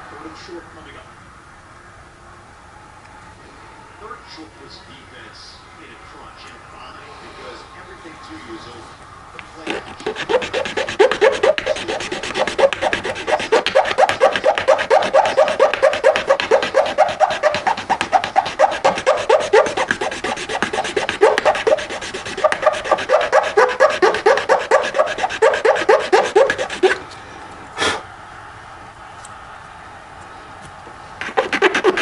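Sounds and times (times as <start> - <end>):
hand file rasping: 9.6 - 27.0, 31.2 - 32.0.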